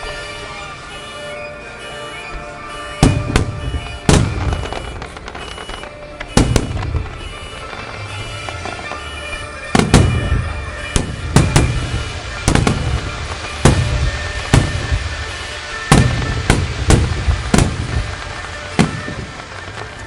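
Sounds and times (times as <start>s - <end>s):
firework shells bursting: 2.9s - 20.0s.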